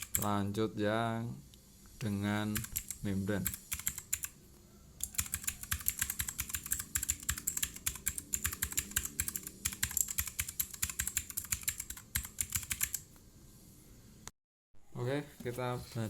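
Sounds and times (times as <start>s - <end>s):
mechanical keyboard typing: 0.0s - 0.3s, 2.5s - 4.3s, 5.0s - 13.1s.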